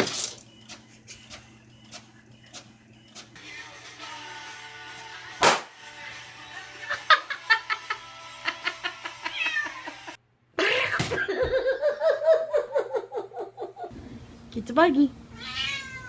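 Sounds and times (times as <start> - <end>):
short clicks and chirps: 0.2 - 3.4
background music: 3.4 - 9.2
cat meowing: 9.3 - 9.9, 15.3 - 16.0.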